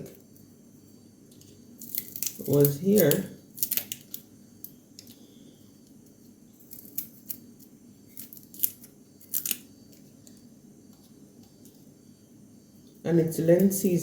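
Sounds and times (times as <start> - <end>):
faint steady hum: 0.0 - 14.0
kitchen clicks and snips: 1.4 - 4.2.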